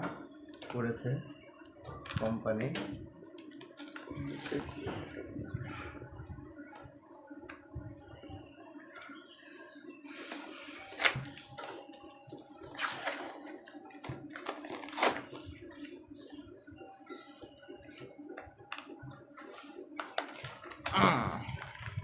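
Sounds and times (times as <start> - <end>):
packaging rustling and ripping: 10.3 - 11.8, 12.4 - 15.9.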